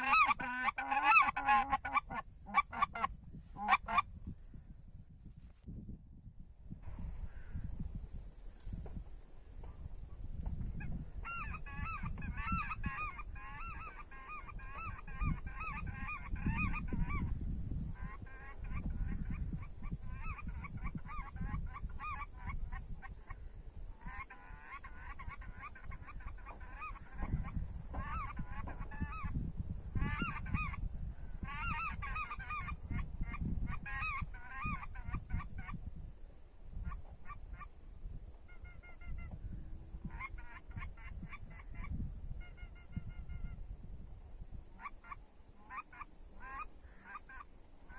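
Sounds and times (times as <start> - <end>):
goose call honks and clucks: 0.0 - 4.1, 10.8 - 23.4, 24.0 - 35.9, 36.8 - 37.7, 38.4 - 39.4, 40.0 - 43.6, 44.7 - 47.9
wind rumble on microphone: 0.0 - 47.9.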